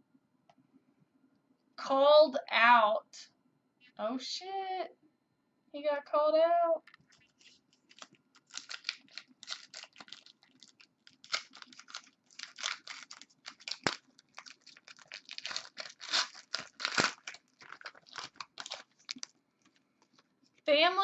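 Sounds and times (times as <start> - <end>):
packaging crinkling and rustling: 6.9 - 20.7.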